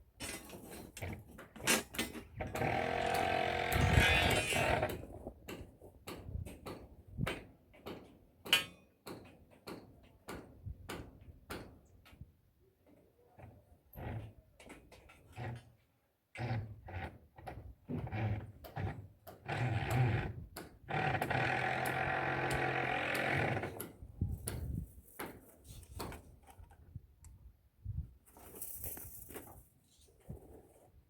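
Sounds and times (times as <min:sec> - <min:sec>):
small motor running: 0:02.5 - 0:04.8.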